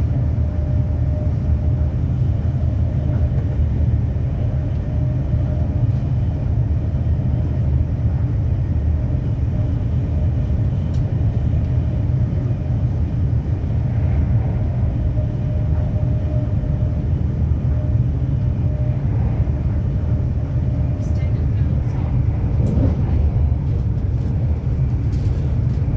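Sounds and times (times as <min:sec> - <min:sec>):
vehicle rumble: 0:10.7 - 0:25.9.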